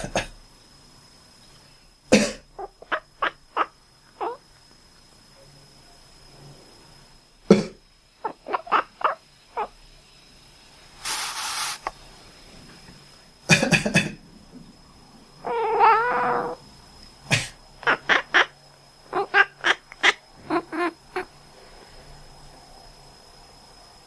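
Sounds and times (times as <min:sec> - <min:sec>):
person coughing: 0:00.0 - 0:00.4, 0:02.1 - 0:02.4, 0:13.5 - 0:14.2, 0:17.3 - 0:17.6
cat quacking chirps: 0:02.6 - 0:04.4, 0:08.2 - 0:09.7, 0:15.4 - 0:16.6, 0:17.8 - 0:21.3.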